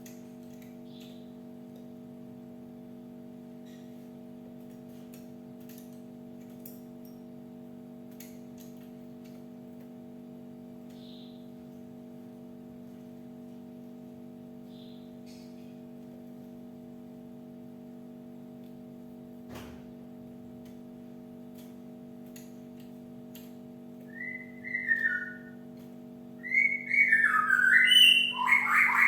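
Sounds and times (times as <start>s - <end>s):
steady low hum: 0.0s - 29.0s
soft high bird notes: 24.1s - 25.6s, 26.4s - 29.0s.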